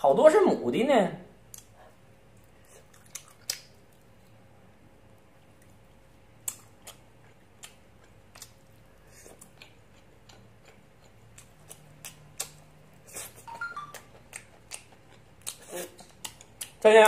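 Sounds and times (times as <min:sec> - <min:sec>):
person chewing: 0:01.5 - 0:04.4, 0:05.2 - 0:16.8
mouth smacks and clicks: 0:02.7 - 0:03.8, 0:09.4 - 0:16.8.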